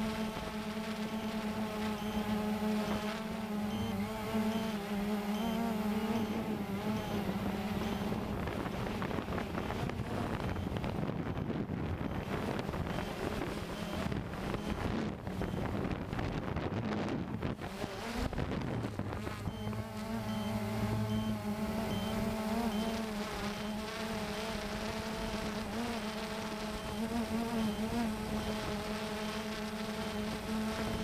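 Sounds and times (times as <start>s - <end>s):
drone motors buzzing: 0.0s - 31.0s
wind rushing over microphone: 6.4s - 19.8s.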